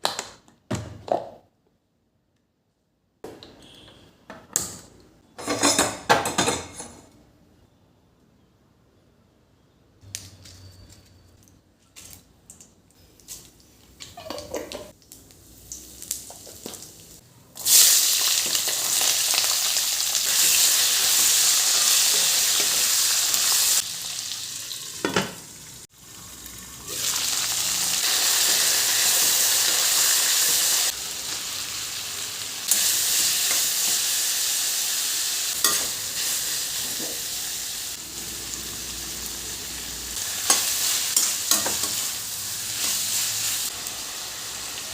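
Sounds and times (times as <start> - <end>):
food sizzling in hot oil: 14.2 - 44.9.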